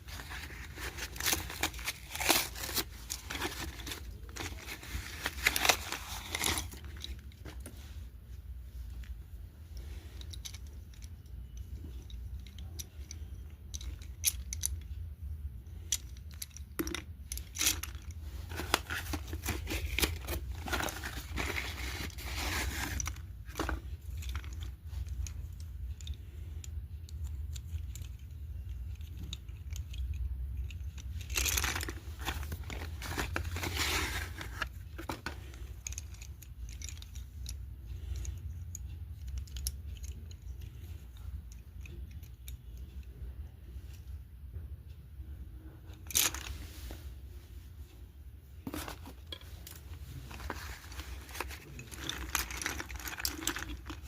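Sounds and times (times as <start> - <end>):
rustling and tearing: 0.0 - 8.0, 17.4 - 24.5, 31.2 - 35.6, 48.6 - 54.0
clicks and crinkles of packaging: 0.1 - 7.6, 15.8 - 26.4, 30.8 - 37.2, 48.7 - 54.0.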